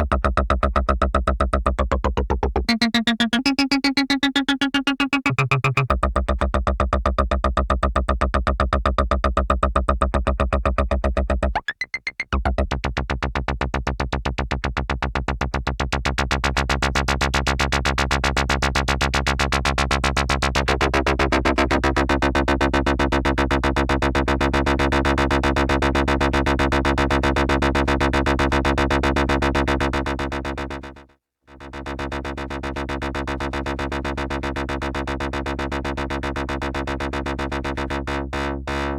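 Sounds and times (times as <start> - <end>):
buzzy pulsing synthesizer drone: 2.6 - 6.0.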